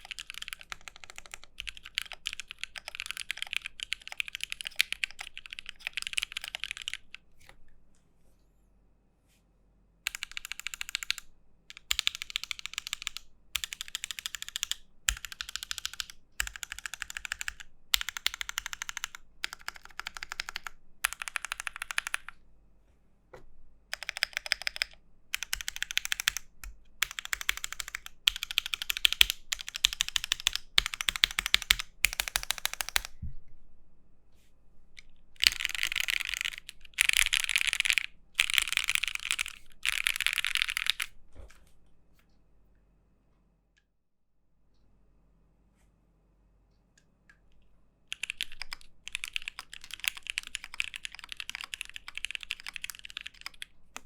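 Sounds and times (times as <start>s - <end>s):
mechanical keyboard typing: 0.0s - 7.3s, 10.1s - 22.4s, 23.9s - 33.2s, 35.4s - 41.2s, 48.1s - 54.0s.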